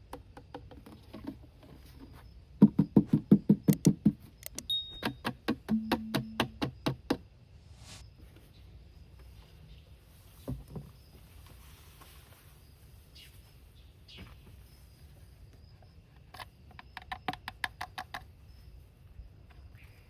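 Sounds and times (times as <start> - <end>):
low hum: 7.3 - 8.1.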